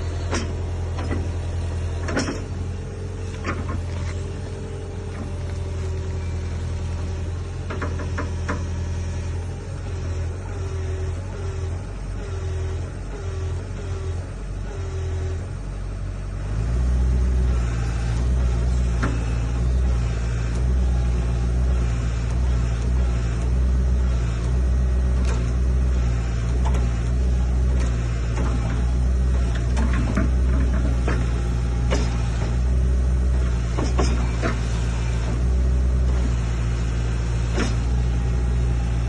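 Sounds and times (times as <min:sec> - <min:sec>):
excavator diesel engine running: 0:00.0 - 0:39.0
short metal knocks: 0:29.4 - 0:32.6.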